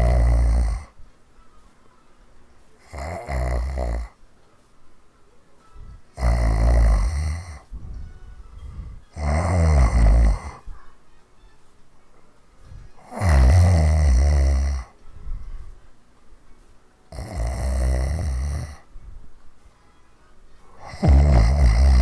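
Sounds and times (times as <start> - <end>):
woman snoring: 0.0 - 1.0, 2.8 - 4.2, 6.1 - 7.7, 8.7 - 10.6, 13.0 - 15.0, 17.1 - 18.9, 20.8 - 22.0
quiet breathing: 0.0 - 11.1, 12.1 - 22.0.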